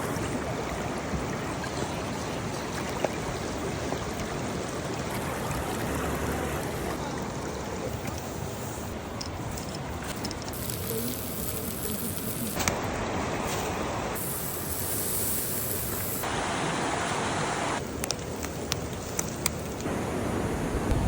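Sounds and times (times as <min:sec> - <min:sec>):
stream water rushing: 0:00.0 - 0:21.0.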